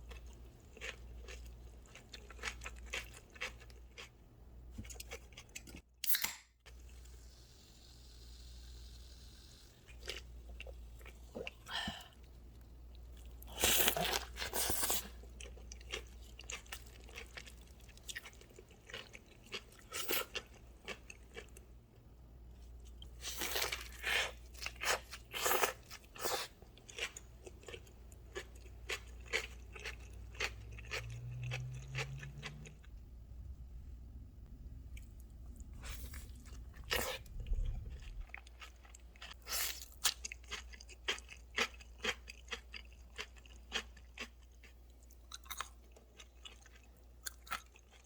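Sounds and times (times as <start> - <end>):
chewing: 24.6 - 33.0, 34.9 - 48.0.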